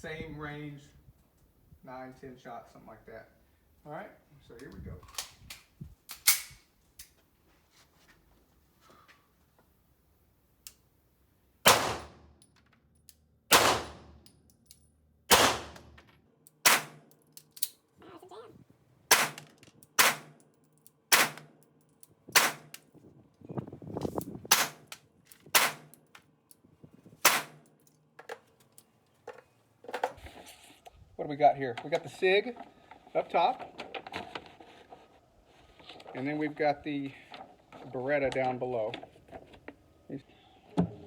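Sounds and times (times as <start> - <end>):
pistol shots: 11.6 - 12.3, 13.5 - 14.2, 15.3 - 16.0, 16.6 - 17.1, 19.1 - 19.4, 20.0 - 20.4, 21.1 - 21.6, 22.4 - 22.8, 24.5 - 24.9, 25.5 - 25.9, 27.2 - 27.6.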